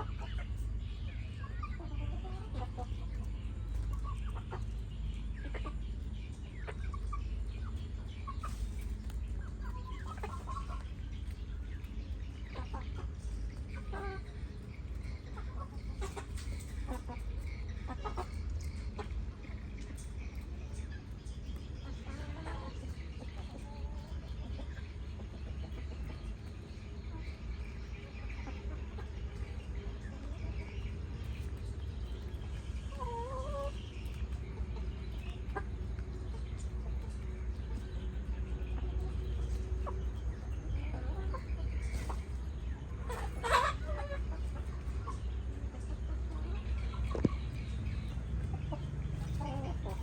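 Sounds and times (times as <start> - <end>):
chickens clucking: 0.0 - 50.0
low rumble: 24.2 - 50.0.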